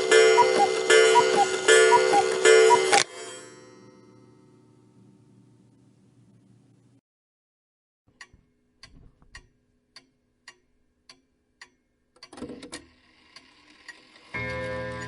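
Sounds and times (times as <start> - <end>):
clock ticking: 0.0 - 3.1, 8.2 - 12.4
clockwork clicks and rattle: 0.0 - 3.4, 12.2 - 15.0.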